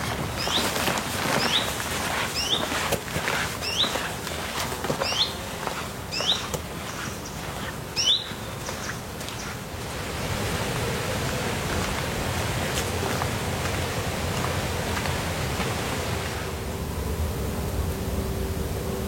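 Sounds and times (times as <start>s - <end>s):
steady rushing noise: 0.0s - 19.0s
bird chirping: 0.4s - 2.8s, 3.6s - 4.1s, 5.0s - 5.5s, 6.1s - 9.6s.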